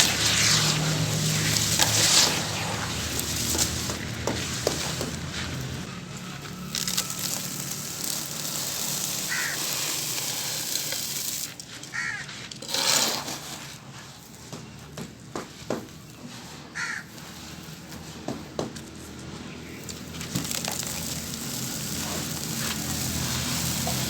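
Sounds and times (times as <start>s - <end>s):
crushed charcoal pouring and crumbling: 0.0s - 14.5s, 16.4s - 18.2s, 18.8s - 24.0s
bird calling: 9.3s - 9.6s.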